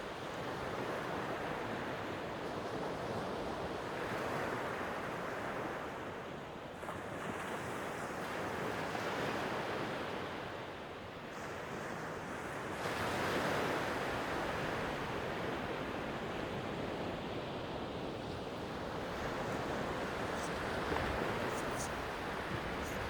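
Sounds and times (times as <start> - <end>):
sea waves washing on shore: 11.3 - 23.0.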